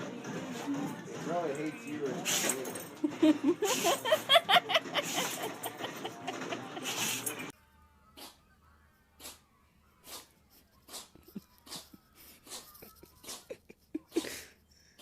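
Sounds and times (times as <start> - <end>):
animal sneezing: 2.3 - 2.6, 6.8 - 7.4, 8.2 - 8.4, 9.2 - 9.4, 10.0 - 13.5.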